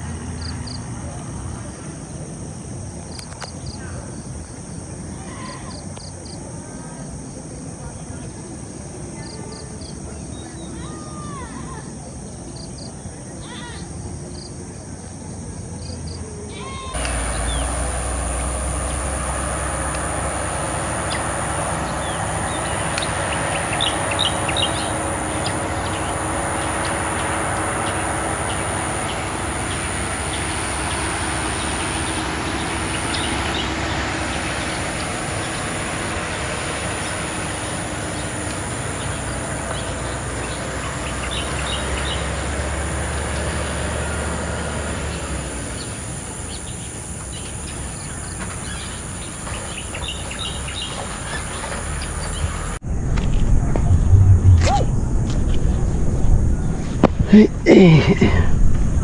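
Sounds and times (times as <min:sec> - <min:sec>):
birds chirping: 0:00.0 - 0:52.8
steady outdoor hiss: 0:00.0 - 0:59.0
low rumble with knocks: 0:47.2 - 0:57.3.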